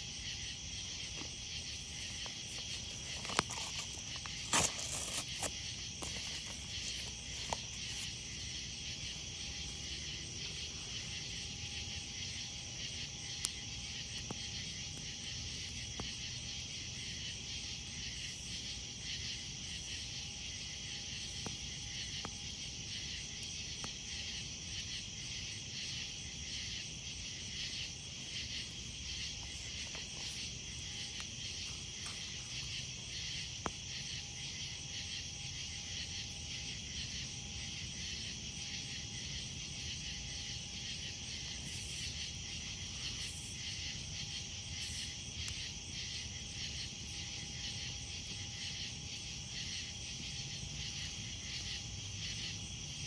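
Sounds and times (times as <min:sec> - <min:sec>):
night insects chirping: 0:00.0 - 0:53.0.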